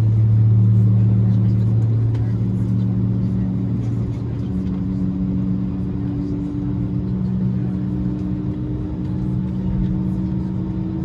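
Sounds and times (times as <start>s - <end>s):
airplane cabin engine drone: 0.0s - 11.0s.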